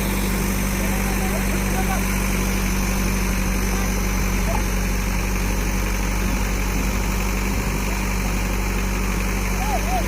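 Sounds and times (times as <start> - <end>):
diesel engine idling: 0.0 - 10.0.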